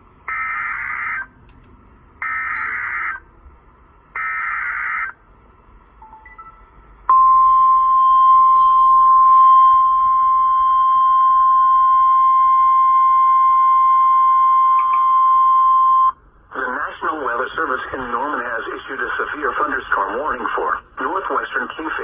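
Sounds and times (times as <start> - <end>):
steady warning alarm tone: 2.2 - 3.3, 4.2 - 5.2, 6.0 - 16.2.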